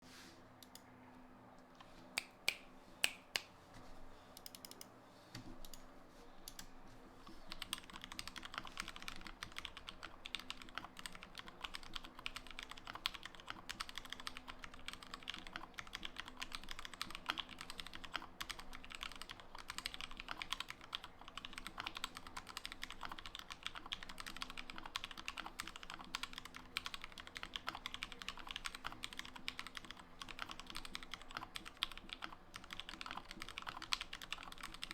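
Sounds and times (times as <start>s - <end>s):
mechanical keyboard typing: 7.5s - 34.9s.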